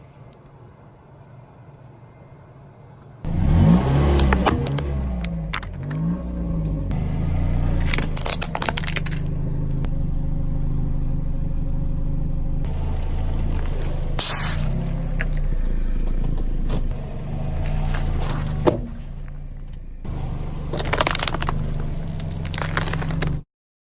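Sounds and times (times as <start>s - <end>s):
car engine running: 0.5s - 23.4s
tyres crushing objects: 7.6s - 9.3s, 12.7s - 23.4s.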